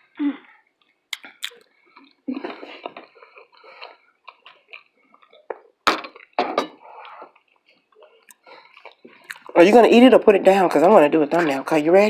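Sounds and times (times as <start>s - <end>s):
person chewing food: 0.0s - 9.6s.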